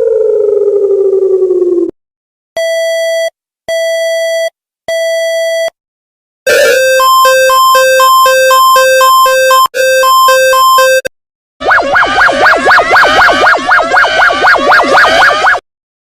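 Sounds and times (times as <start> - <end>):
steady electronic beeps: 6.5 - 11.1
alternating two-pitch alarm tone: 6.5 - 15.6.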